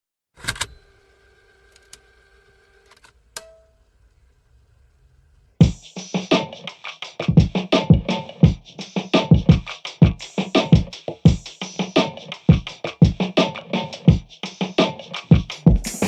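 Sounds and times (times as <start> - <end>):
electronic music with drum-machine beat: 5.6 - 16.0.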